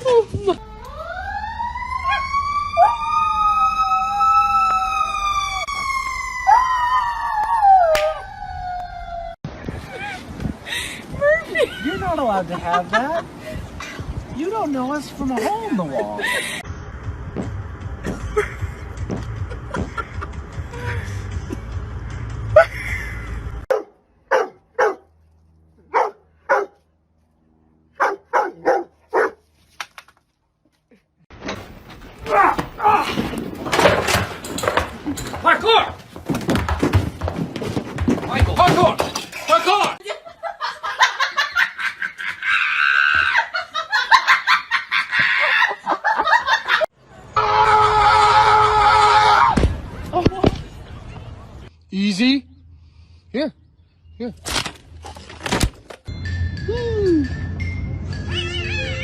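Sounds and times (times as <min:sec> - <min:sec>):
siren wailing: 0:00.6 - 0:09.4
dog barking: 0:23.7 - 0:25.1, 0:25.9 - 0:26.8, 0:28.0 - 0:29.4.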